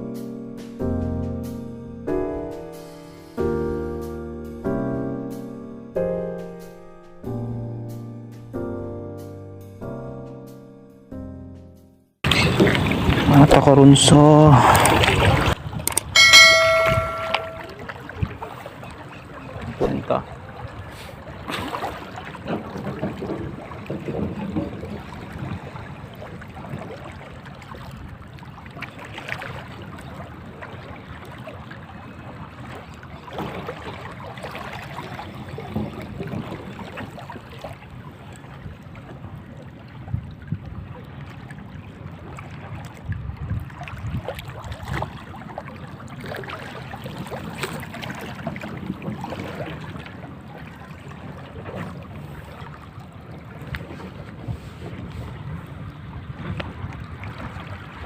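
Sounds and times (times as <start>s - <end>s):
sea water washing: 12.2s - 58.0s
wind buffeting microphone: 19.2s - 58.0s.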